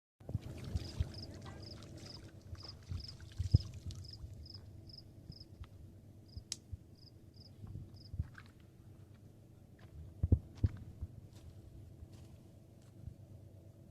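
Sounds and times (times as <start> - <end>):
insect chirping: 0.8 - 3.2, 4.0 - 5.5, 7.0 - 8.1
dull low thumps: 9.8 - 12.2.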